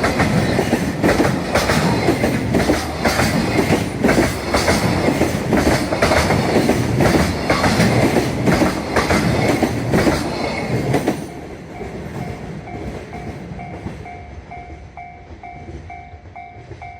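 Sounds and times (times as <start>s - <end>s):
train wheels clacking over rail joints: 0.0s - 14.2s
level-crossing alarm ringing: 11.2s - 16.9s.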